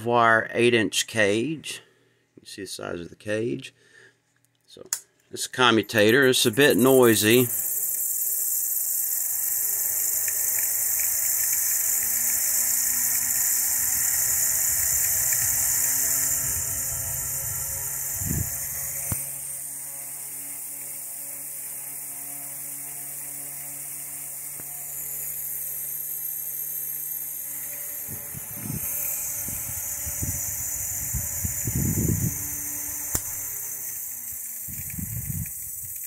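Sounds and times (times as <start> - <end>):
electric fan motor hum: 5.9 - 36.0
sharp click: 33.0 - 33.5.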